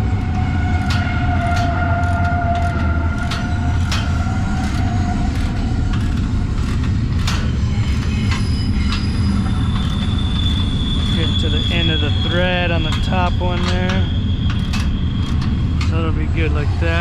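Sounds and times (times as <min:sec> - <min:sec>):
sharp metallic clicks: 0:00.0 - 0:17.0
train rumbling past: 0:00.0 - 0:17.0
wheel squeal: 0:00.0 - 0:17.0.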